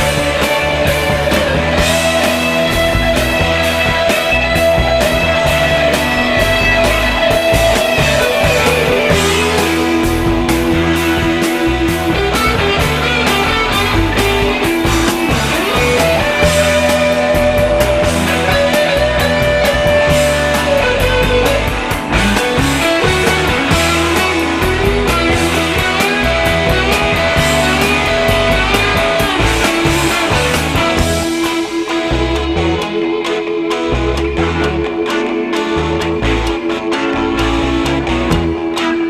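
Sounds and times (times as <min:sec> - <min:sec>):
rock music with guitar and drums: 0:00.0 - 0:39.0.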